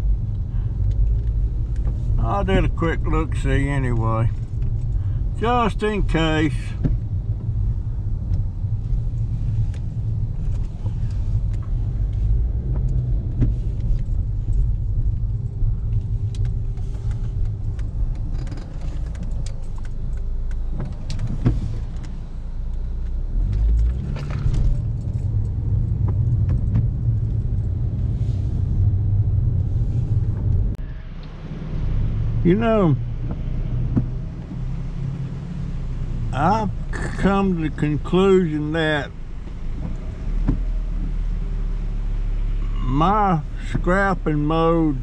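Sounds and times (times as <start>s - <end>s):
car engine low rumble: 0.0s - 45.0s
light clicks and rattles: 8.2s - 28.1s.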